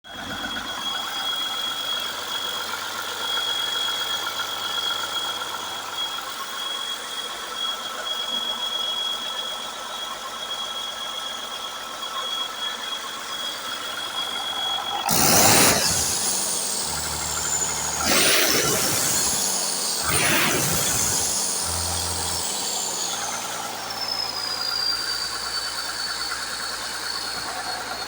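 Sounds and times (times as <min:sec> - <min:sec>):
high-pitched whine: 0:14.8 - 0:28.0
diesel engine running: 0:15.1 - 0:28.0.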